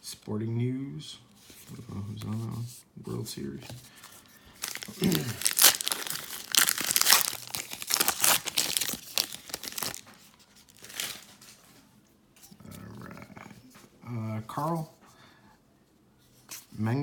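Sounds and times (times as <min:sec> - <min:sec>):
foil wrapper tearing and crinkling: 0:04.6 - 0:11.4.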